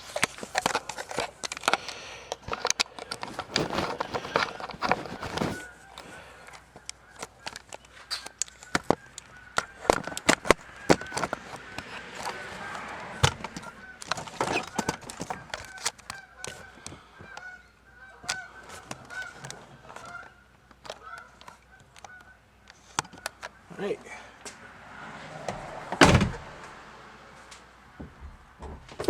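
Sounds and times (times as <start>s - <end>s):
tools clicking and knocking: 0.0s - 16.6s
geese honking: 0.2s - 25.2s
plastic trim being pried loose: 9.8s - 16.6s.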